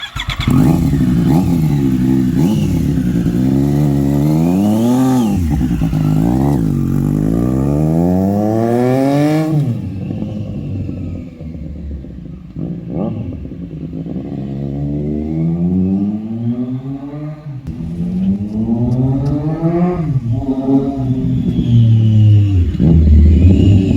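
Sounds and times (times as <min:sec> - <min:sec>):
motorcycle engine revving: 0:00.0 - 0:23.9.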